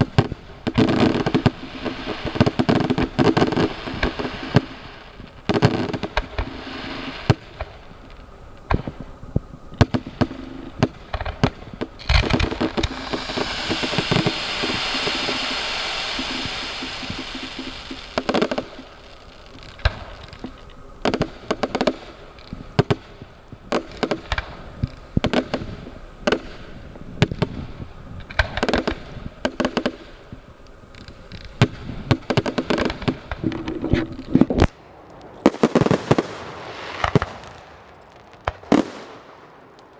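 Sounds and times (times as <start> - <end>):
firework hiss: 0.0 - 39.7
firework bangs and crackles: 0.0 - 39.9.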